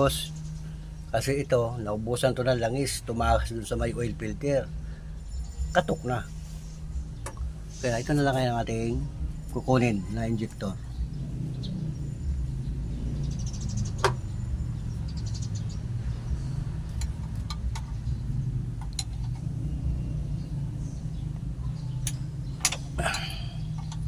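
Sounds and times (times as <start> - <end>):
low engine rumble: 0.0 - 24.0
metallic clicks and taps: 16.9 - 18.0, 18.8 - 19.5, 23.7 - 24.0.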